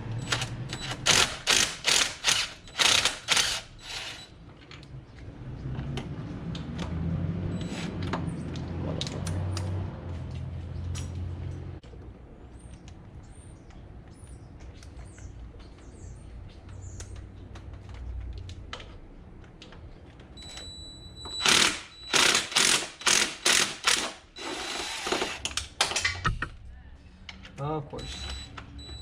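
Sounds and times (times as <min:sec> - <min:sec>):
ratchet wrench ratcheting: 0:01.0 - 0:04.3, 0:21.4 - 0:25.1.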